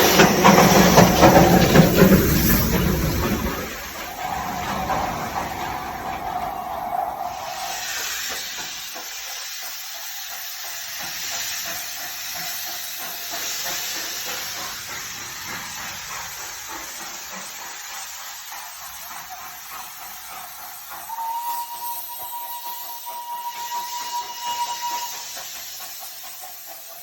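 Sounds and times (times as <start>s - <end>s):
steam locomotive hissing: 0.0s - 27.0s
steady high tone: 4.0s - 8.1s.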